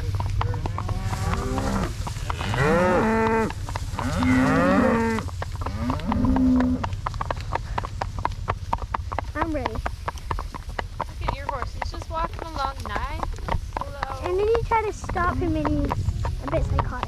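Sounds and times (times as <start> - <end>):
cattle mooing: 0.0 - 7.8.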